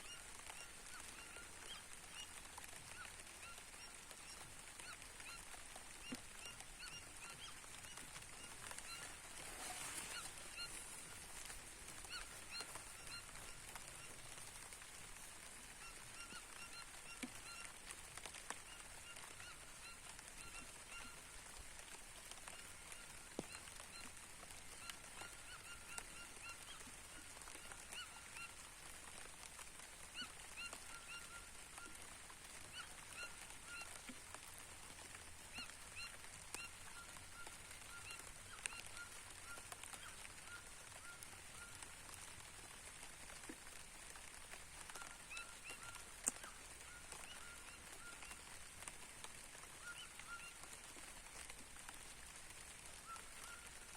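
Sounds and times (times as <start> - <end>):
rain falling on a field: 0.0 - 53.9
birds calling: 0.1 - 17.8.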